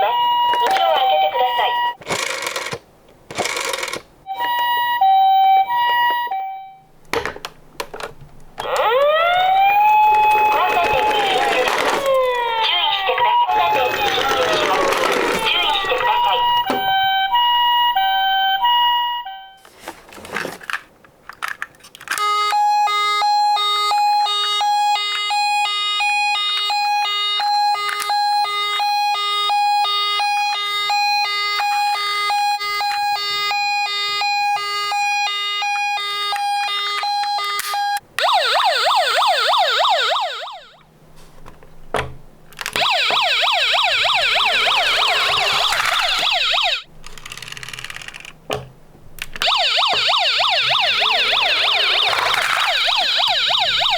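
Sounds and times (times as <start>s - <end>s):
yelp siren: 0.0s - 2.0s, 8.6s - 19.6s, 22.2s - 40.8s, 42.8s - 46.9s, 49.4s - 53.9s
two-tone hi-lo siren: 8.6s - 19.6s, 22.2s - 40.8s, 42.8s - 46.9s, 49.4s - 53.9s.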